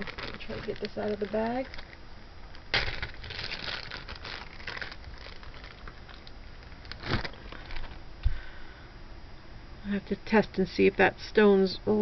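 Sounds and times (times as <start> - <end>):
plastic bag crinkling: 0.0 - 8.1.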